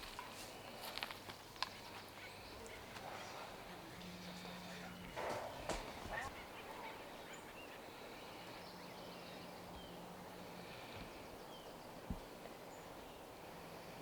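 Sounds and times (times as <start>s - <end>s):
faint outdoor ambience: 0.0s - 14.0s.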